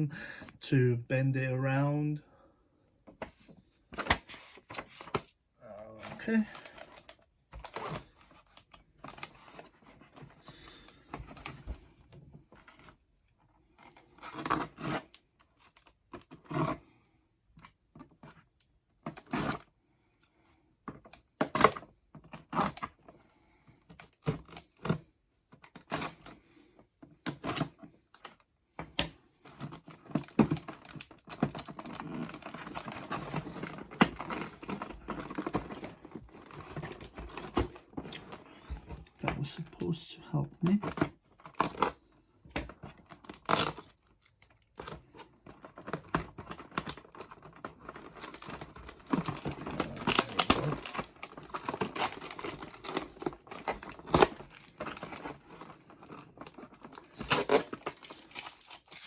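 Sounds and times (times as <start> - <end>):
plastic packaging crinkling: 43.0 - 59.0.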